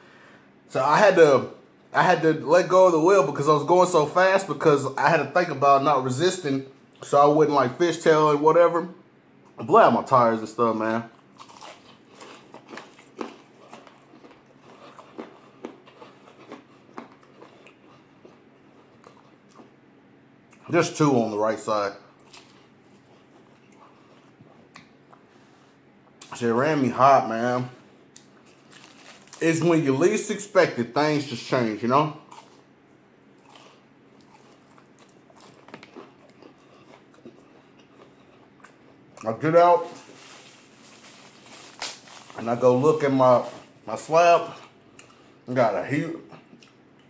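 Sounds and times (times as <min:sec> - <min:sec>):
crunching fried chicken: 0:10.8 - 0:19.8, 0:20.6 - 0:25.2, 0:28.1 - 0:30.4, 0:33.4 - 0:45.4.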